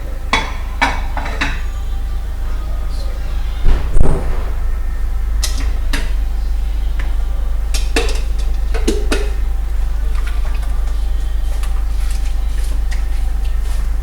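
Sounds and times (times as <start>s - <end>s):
low hum: 3.2s - 7.7s.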